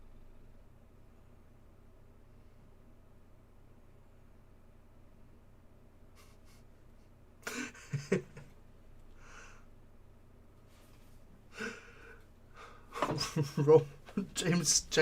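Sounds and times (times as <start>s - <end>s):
man breathing: 9.1s - 9.8s, 11.5s - 13.1s.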